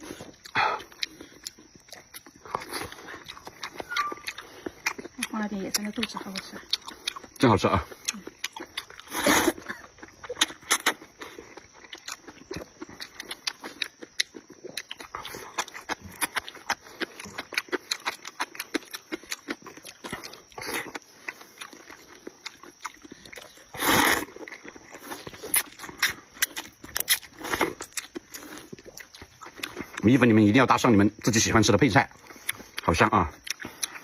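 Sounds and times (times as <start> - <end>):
wet chewing and lip smacks: 0.0 - 34.0
loud slurps: 9.0 - 9.7, 23.7 - 24.4.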